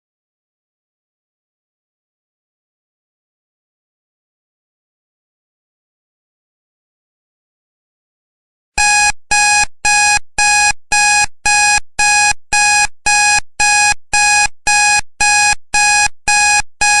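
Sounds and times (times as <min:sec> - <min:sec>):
electronic alarm beeping: 0:08.8 - 0:17.0.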